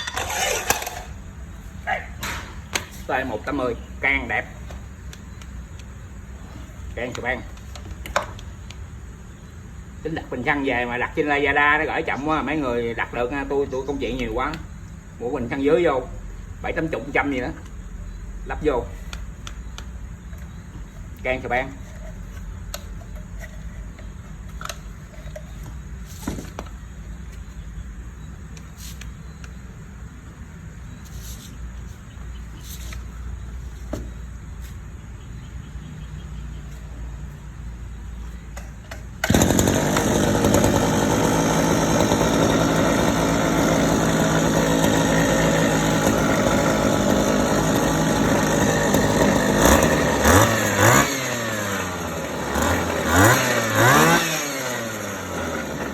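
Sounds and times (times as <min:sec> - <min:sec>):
small petrol engine revving: 0:00.0 - 0:01.2, 0:39.0 - 0:55.9.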